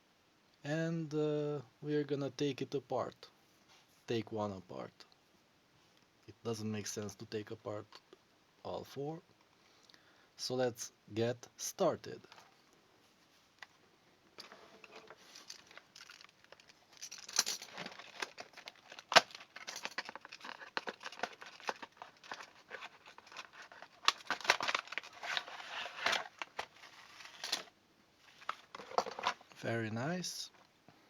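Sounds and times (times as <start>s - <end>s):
packaging crinkling and tearing: 17.7s - 27.7s.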